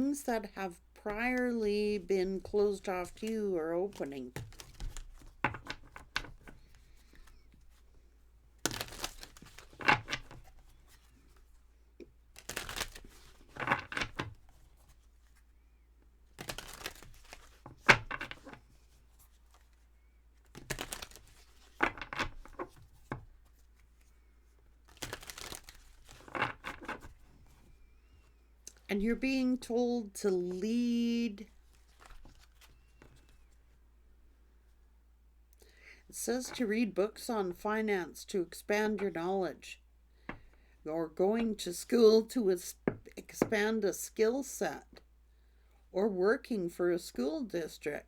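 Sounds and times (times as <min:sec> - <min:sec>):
cards being shuffled: 0:01.1 - 0:07.8, 0:08.6 - 0:11.6, 0:12.3 - 0:15.4, 0:16.3 - 0:19.8, 0:20.4 - 0:24.1, 0:24.8 - 0:27.7, 0:31.4 - 0:33.6.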